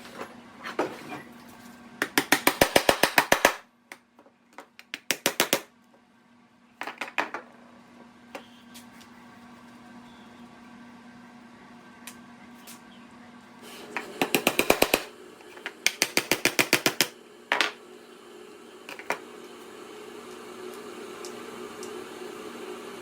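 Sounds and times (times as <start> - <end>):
low machine hum: 5.7 - 23.0.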